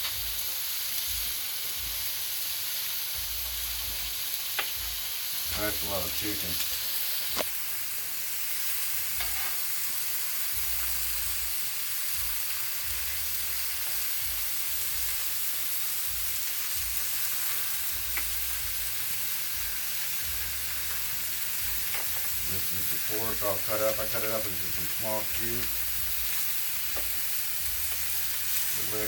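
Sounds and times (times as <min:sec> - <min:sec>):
chicken sizzling on griddle: 0:00.0 - 0:29.0.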